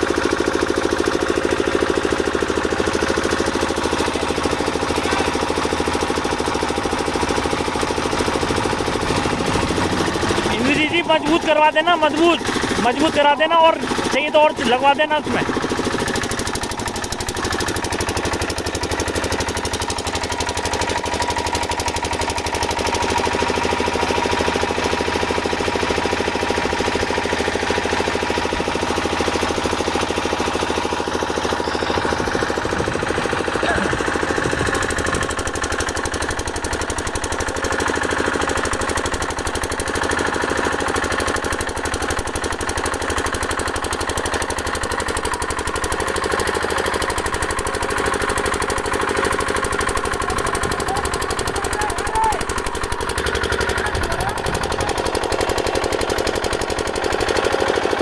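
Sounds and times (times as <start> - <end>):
engine knocking chatter: 0.0 - 58.0.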